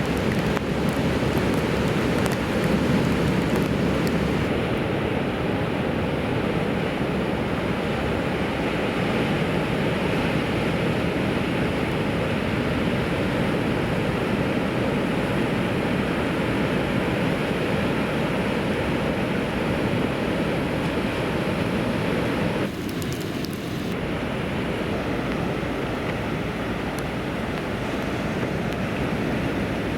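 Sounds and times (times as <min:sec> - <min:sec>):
ocean surf breaking: 0:00.0 - 0:04.8, 0:21.2 - 0:29.9
wind on microphone: 0:00.0 - 0:08.7.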